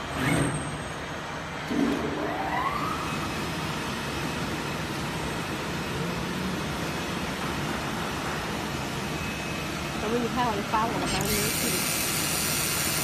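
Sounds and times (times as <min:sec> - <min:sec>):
cutting machine motor whining: 0:11.0 - 0:13.0.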